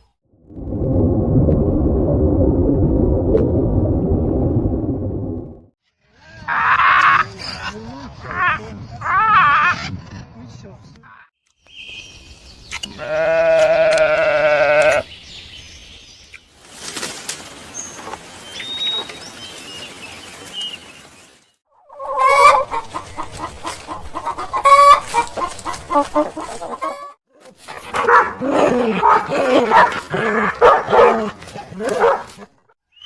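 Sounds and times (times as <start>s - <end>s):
loud wavering bleat: 12.9s - 15.0s
chickens clucking: 21.9s - 27.2s.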